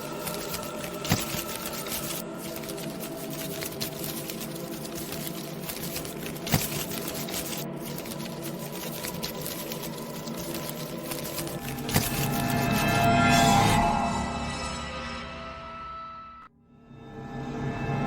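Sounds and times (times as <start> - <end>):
continuous noisy bed: 0.0 - 13.5
dense fine crackle: 0.0 - 13.7.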